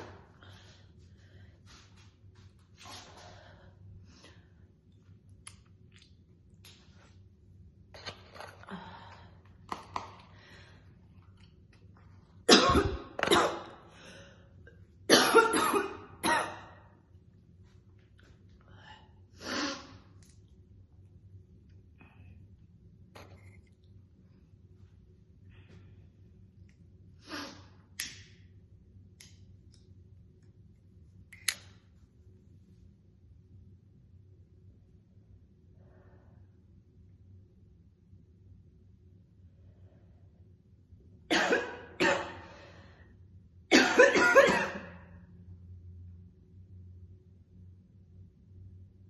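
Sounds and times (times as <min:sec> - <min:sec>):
woman coughing heavily: 0:12.5 - 0:13.8, 0:15.1 - 0:16.8, 0:41.3 - 0:42.5, 0:43.7 - 0:45.0.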